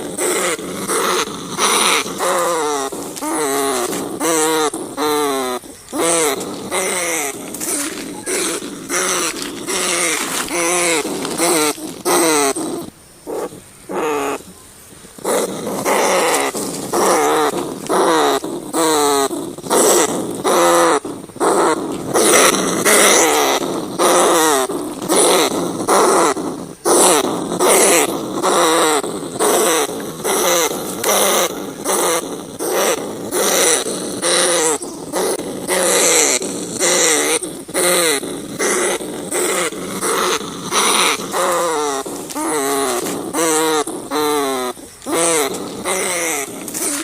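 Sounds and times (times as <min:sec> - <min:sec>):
rats squealing: 0:00.0 - 0:14.5, 0:15.2 - 0:47.0.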